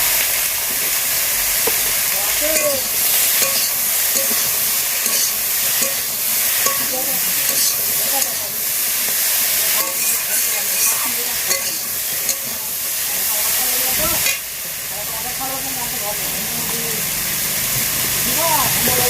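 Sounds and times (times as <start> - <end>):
food sizzling in hot oil: 0.0 - 19.0.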